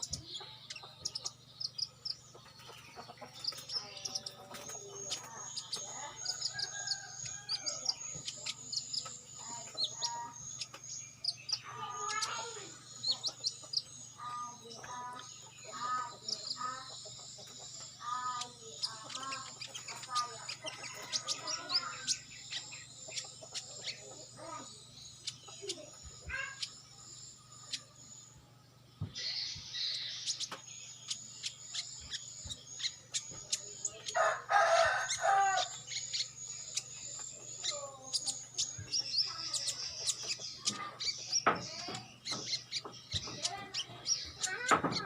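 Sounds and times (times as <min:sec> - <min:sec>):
small-bird chirps: 0:00.0 - 0:45.0
rooster crowing: 0:34.2 - 0:35.8.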